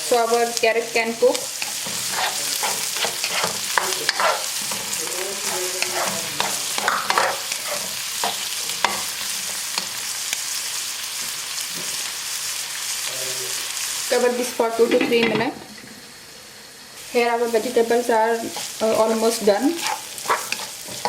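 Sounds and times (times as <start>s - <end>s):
vegetables sizzling in a pan: 0.0s - 21.0s
spoon scraping and stirring: 1.5s - 9.9s, 18.5s - 21.0s.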